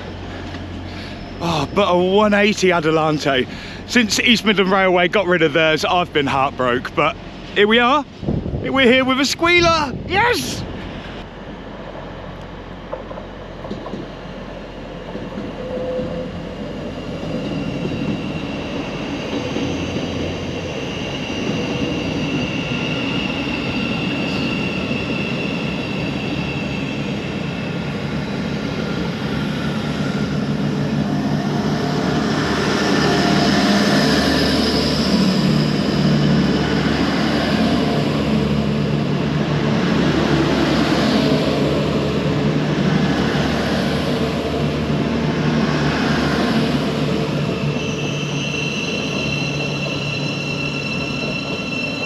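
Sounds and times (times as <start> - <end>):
high steady squeal: 0.0 - 3.4, 15.5 - 38.8, 46.6 - 52.0
diesel train approaching: 0.0 - 52.0.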